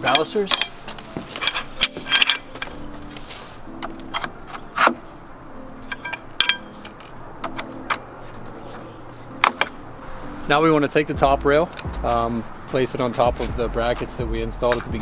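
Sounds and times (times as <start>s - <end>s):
balusters clinking and knocking: 0.0s - 5.2s, 5.8s - 9.9s.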